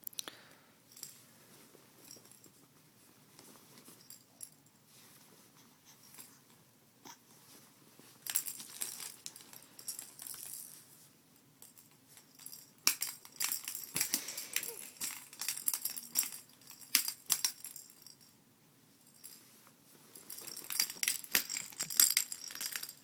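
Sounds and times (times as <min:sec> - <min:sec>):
small hard objects rattling: 0:20.2 - 0:23.0.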